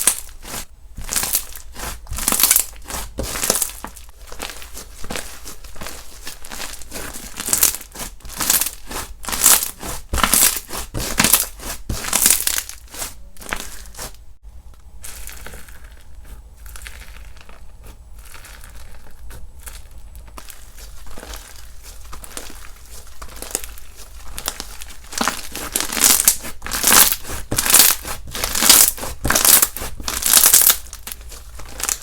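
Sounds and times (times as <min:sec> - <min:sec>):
slime crackling and popping: 0:00.0 - 0:14.2, 0:14.8 - 0:32.0.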